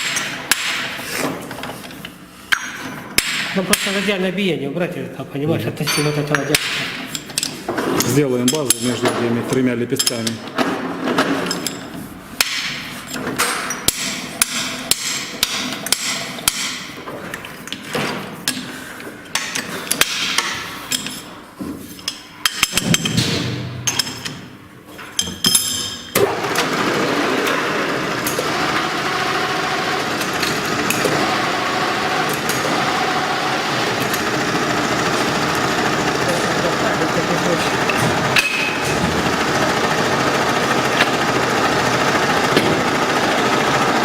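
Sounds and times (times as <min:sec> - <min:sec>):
power tool running with hiss: 0:26.2 - 0:44.0.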